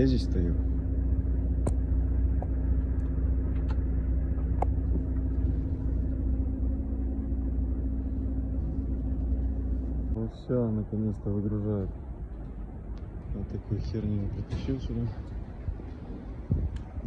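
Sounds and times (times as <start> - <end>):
diesel truck engine idling: 0.0 - 17.0.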